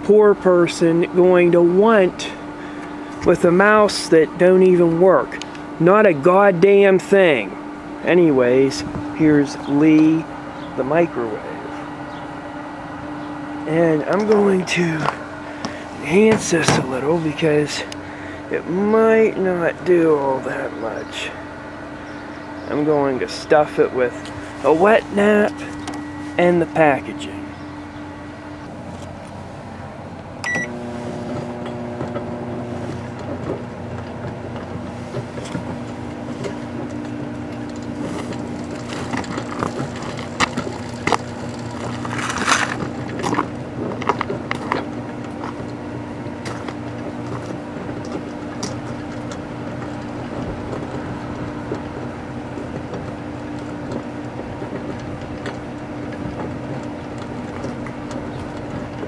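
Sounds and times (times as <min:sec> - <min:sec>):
microwave oven humming: 0:00.0 - 0:59.0
microwave keypad beep: 0:30.4 - 0:30.7.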